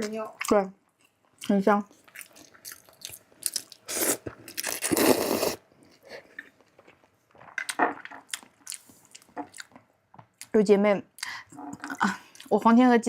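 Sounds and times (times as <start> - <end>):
person chewing food: 0.4 - 10.6.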